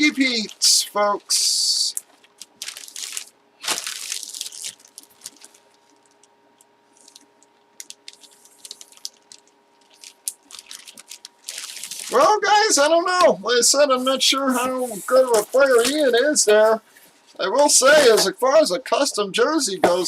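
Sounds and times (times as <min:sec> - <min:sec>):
faint steady hum: 0:00.0 - 0:20.0
packaging crinkling: 0:01.9 - 0:12.2, 0:15.2 - 0:16.2.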